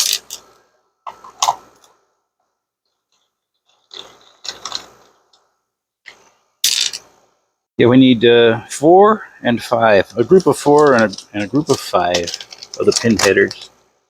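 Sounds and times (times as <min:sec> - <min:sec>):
pin header strips rattling: 0:10.3 - 0:13.7.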